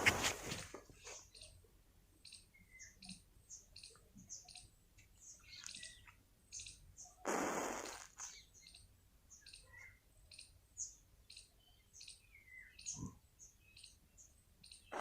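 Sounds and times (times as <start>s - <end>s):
faint high chirps and ticks: 0.9s - 7.2s, 7.8s - 15.0s
match heads flaring hiss: 7.3s - 8.4s.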